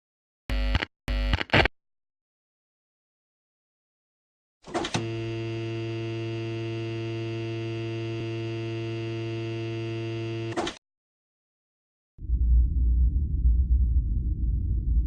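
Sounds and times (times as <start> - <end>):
synthesized electronic drone: 5.0 - 10.6.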